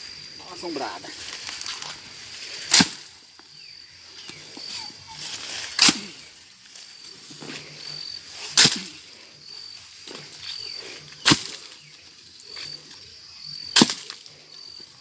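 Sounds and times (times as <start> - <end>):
corn ears snapping off stalks: 1.3 - 2.0, 2.6 - 3.1, 5.3 - 7.6, 8.5 - 9.0, 11.2 - 11.8, 13.7 - 14.3.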